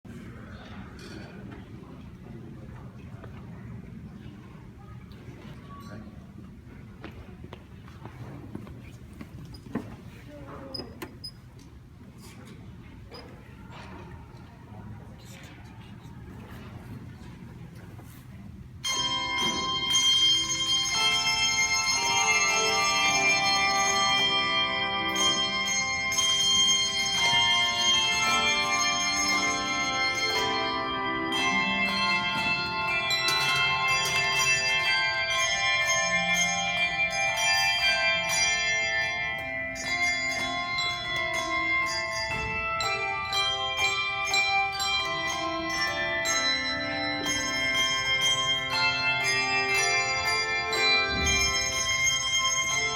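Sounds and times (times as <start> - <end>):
handbell choir playing: 18.8 - 52.9.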